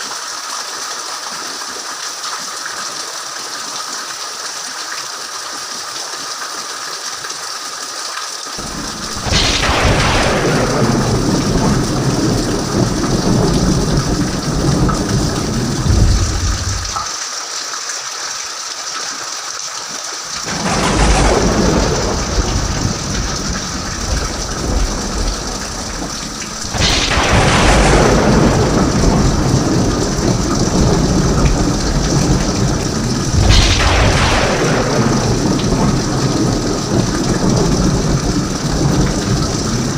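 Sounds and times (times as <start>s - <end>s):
heavy rain: 0.0s - 39.9s
thunder rumbling: 8.6s - 17.1s, 20.4s - 39.9s.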